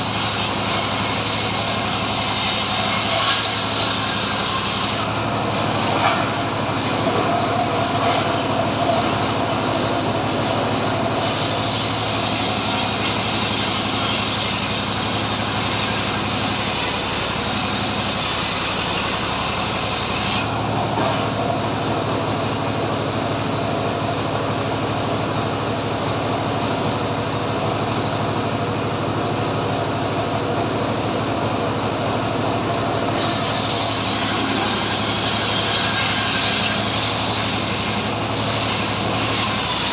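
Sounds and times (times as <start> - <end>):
saw cutting hiss: 0.0 - 5.2, 11.1 - 20.8, 33.1 - 39.9
engine drone: 0.0 - 39.9.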